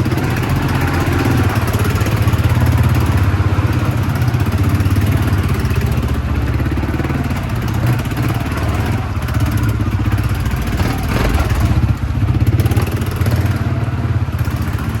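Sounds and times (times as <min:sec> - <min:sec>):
engine running: 0:00.0 - 0:15.0.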